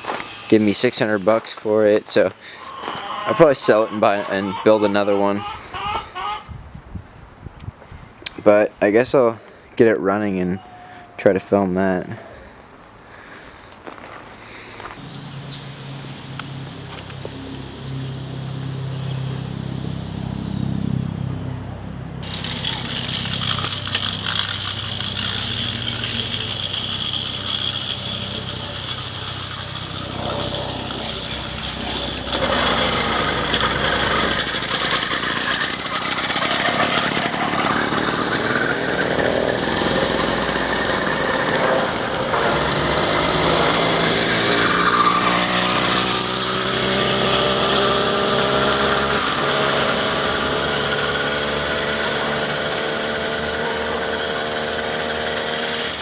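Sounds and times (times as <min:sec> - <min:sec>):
two-stroke engine running: 0:00.0 - 0:01.3, 0:19.6 - 0:56.0.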